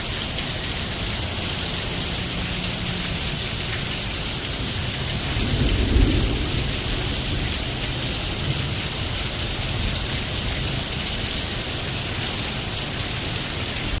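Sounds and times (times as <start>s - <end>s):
steady rain falling: 0.0s - 14.0s.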